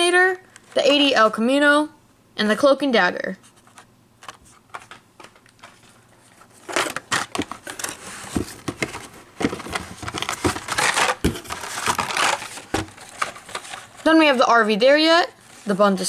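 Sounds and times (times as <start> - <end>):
plastic blister packs crinkling: 3.6 - 16.0.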